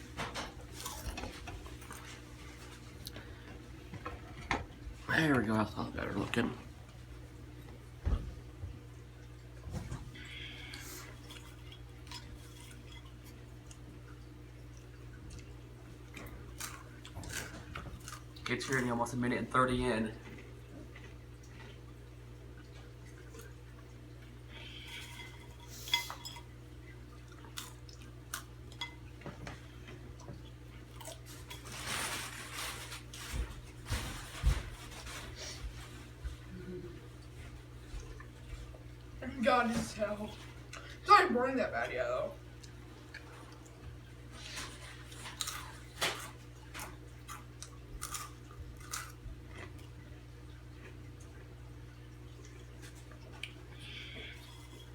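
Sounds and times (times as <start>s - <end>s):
steady low hum: 0.0s - 54.9s
rustling: 31.4s - 36.2s
crunching tortilla chips: 44.4s - 49.8s.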